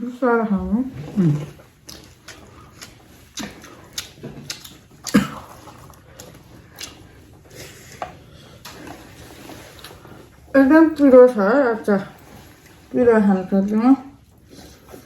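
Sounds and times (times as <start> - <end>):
person chewing with wet smacks: 1.0 - 10.5.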